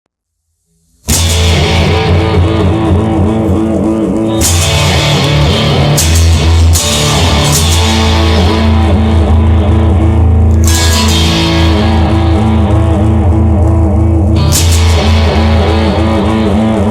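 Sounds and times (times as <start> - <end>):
instrumental rock music: 1.0 - 16.9
ringing guitar accents: 1.1 - 16.9.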